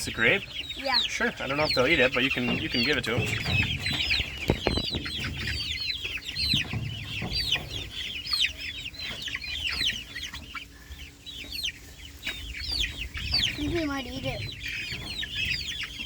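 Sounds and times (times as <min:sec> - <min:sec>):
chicks peeping: 0:00.0 - 0:16.0.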